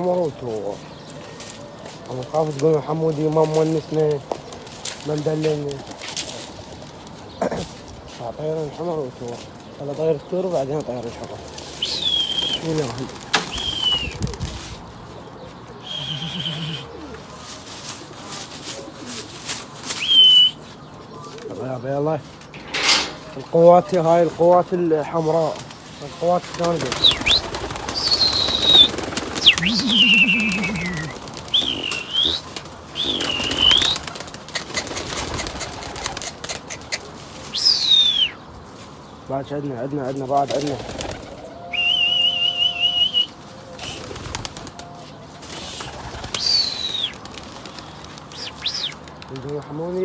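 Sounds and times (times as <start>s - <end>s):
pigeons cooing: 10.2s - 17.7s, 26.4s - 38.4s, 40.5s - 49.2s
pigeon wings clapping and flapping: 11.3s - 14.6s, 26.4s - 37.1s, 40.5s - 41.9s, 43.8s - 44.9s, 45.5s - 49.8s
swooping whistles: 11.8s - 12.8s, 13.5s - 14.2s, 15.8s - 16.9s, 20.0s - 20.6s, 27.0s - 34.0s, 37.5s - 38.4s, 41.7s - 44.2s, 45.6s - 47.2s, 48.3s - 49.0s.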